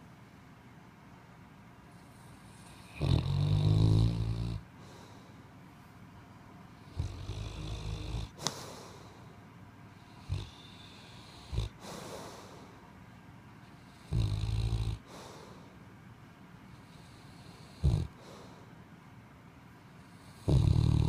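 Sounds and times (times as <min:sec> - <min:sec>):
man snoring: 0:02.7 - 0:04.7, 0:06.9 - 0:08.5, 0:10.1 - 0:12.6, 0:13.9 - 0:15.4, 0:16.9 - 0:18.5, 0:20.1 - 0:21.0.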